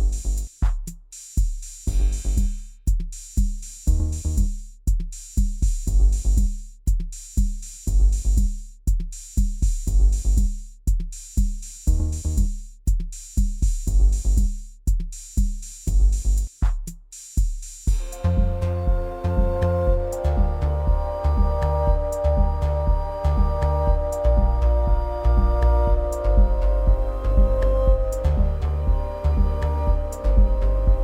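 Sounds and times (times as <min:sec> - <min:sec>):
bass notes: 0:00.0 - 0:00.5, 0:01.9 - 0:02.6, 0:03.9 - 0:04.5, 0:05.9 - 0:06.5, 0:07.9 - 0:08.5, 0:09.9 - 0:10.5, 0:11.9 - 0:12.5, 0:13.9 - 0:14.5, 0:15.9 - 0:16.5, 0:17.9 - 0:31.0
drum groove with kick drum: 0:00.0 - 0:31.0.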